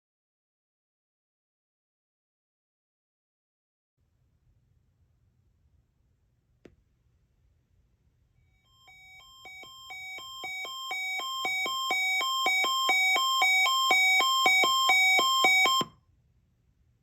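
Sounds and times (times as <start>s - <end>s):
two-tone alert beeping: 8.7s - 15.9s.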